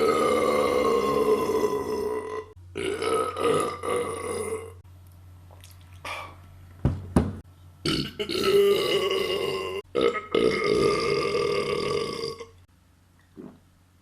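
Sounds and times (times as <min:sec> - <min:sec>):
person burping: 0:00.0 - 0:04.8, 0:07.8 - 0:12.6.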